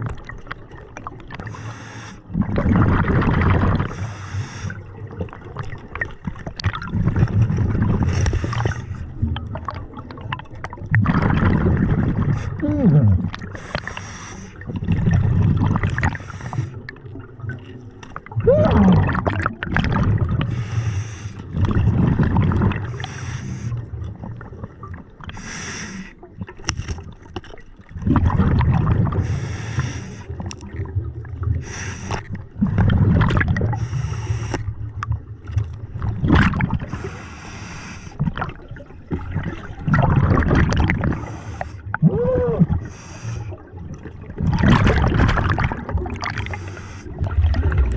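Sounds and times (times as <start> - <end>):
exhaust bubbles rumbling: 2.2 - 4.1, 4.7 - 13.8, 14.5 - 20.8, 21.4 - 23.2, 27.9 - 29.7, 30.3 - 37.1, 38.2 - 47.9.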